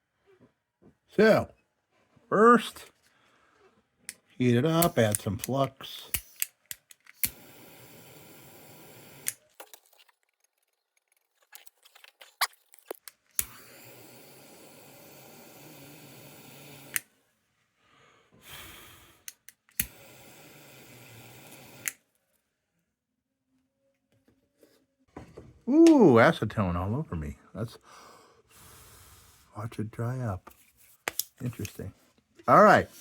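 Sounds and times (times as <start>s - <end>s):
small torch hissing: 4.7s - 9.5s, 13.4s - 17.1s, 18.4s - 22.0s
torch switch click: 4.8s - 5.5s, 6.1s - 7.6s, 16.8s - 17.1s, 19.3s - 20.0s, 21.4s - 22.0s.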